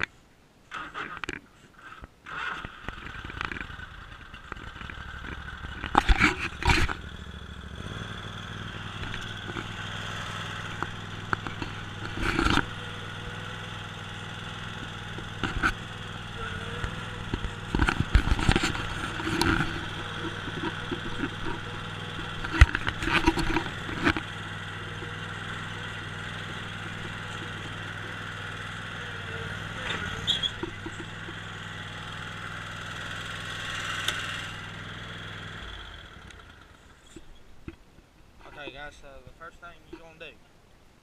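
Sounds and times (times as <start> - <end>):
mower engine running: 2.3 - 37.4
sharp knocks and clatters: 2.9 - 7.4, 8.7 - 28.8, 29.7 - 32.1.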